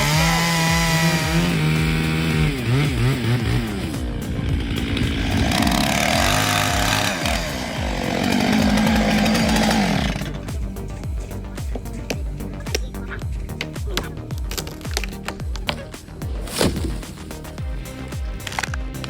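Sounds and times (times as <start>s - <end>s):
chainsaw cutting wood: 0.0s - 11.0s, 14.4s - 19.0s
background music with beat: 0.0s - 19.0s.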